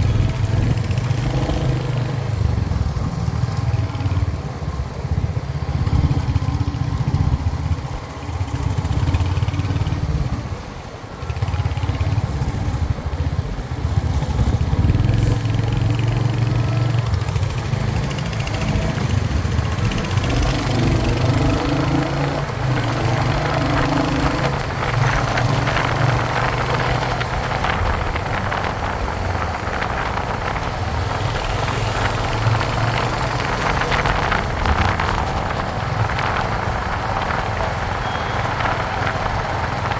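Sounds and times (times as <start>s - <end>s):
motorcycle engine running: 0.0s - 39.9s
wind rush: 12.2s - 39.9s.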